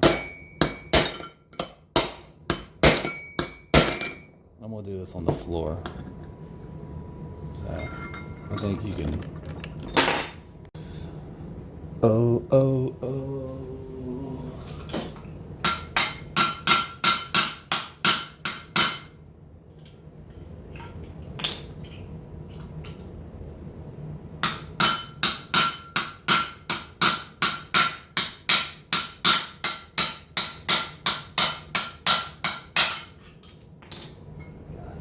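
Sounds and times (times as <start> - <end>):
hammer striking steel punch: 0.0 - 4.3, 15.6 - 19.1, 24.4 - 33.1.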